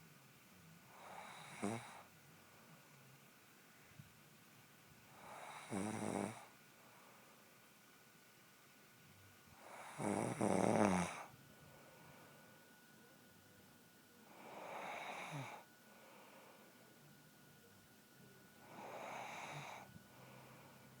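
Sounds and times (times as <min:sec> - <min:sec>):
woman snoring: 0:01.0 - 0:02.0, 0:05.2 - 0:06.5, 0:09.7 - 0:11.3, 0:14.4 - 0:15.6, 0:18.7 - 0:19.9.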